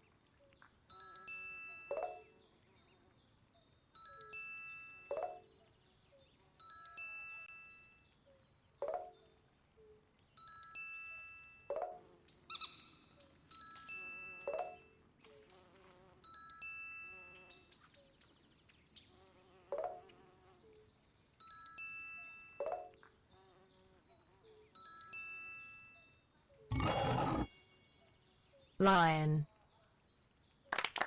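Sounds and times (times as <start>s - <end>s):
bright ringing chime: 26.7s - 27.8s.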